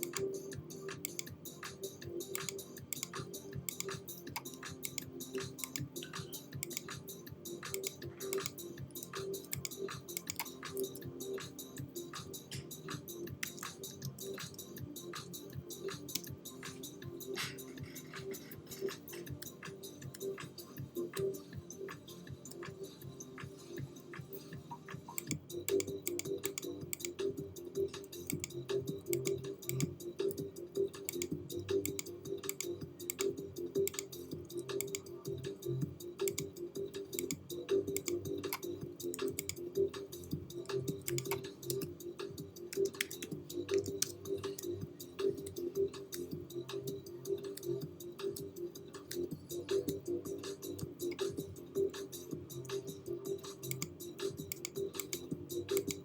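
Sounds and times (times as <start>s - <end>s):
clicking beat: 0.0s - 11.0s, 25.0s - 27.4s, 28.0s - 35.2s, 36.2s - 56.0s
background music repeated notes: 0.0s - 56.0s
quick clicks: 7.8s - 10.8s, 40.7s - 41.9s.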